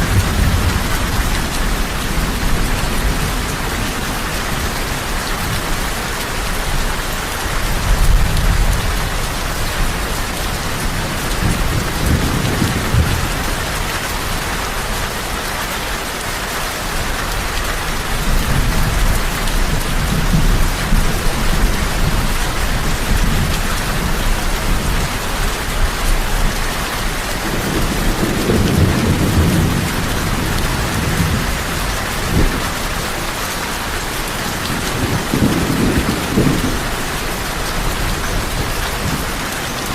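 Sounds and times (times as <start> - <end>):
heavy rain falling: 0.0 - 39.9
low rolls of thunder: 27.4 - 32.8, 34.6 - 37.0.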